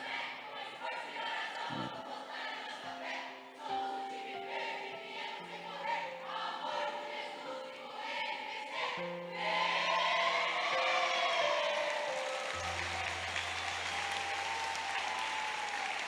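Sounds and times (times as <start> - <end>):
group of voices singing: 0.0 - 15.3.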